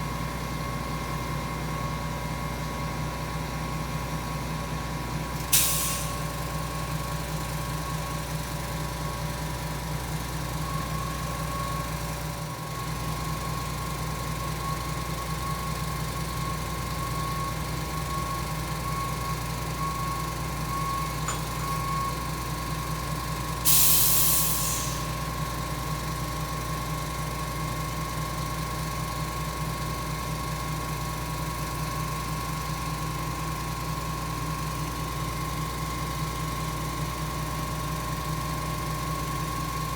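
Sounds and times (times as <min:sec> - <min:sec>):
concrete pump engine drone: 0:00.0 - 0:23.7
burst of hiss: 0:23.7 - 0:25.1.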